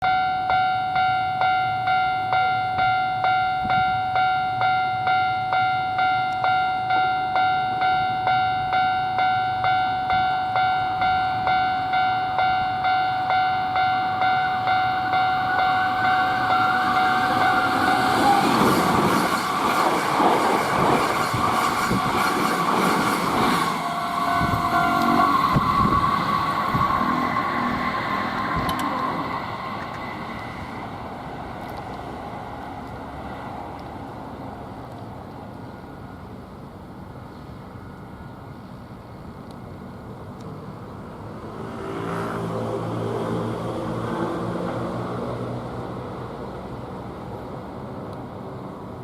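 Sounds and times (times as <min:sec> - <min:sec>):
level crossing warning bell: 0:00.0 - 0:31.8
train wheels clattering: 0:16.5 - 0:30.2.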